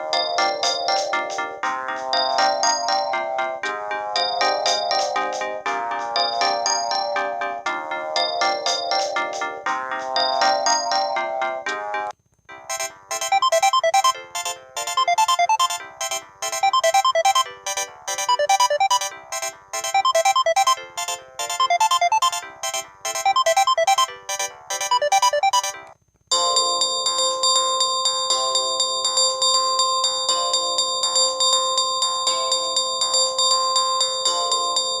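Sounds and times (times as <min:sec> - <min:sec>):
tinny phone ringtone melody: 0:00.0 - 0:35.0
bell-like phone tone: 0:06.2 - 0:12.1, 0:12.7 - 0:30.8.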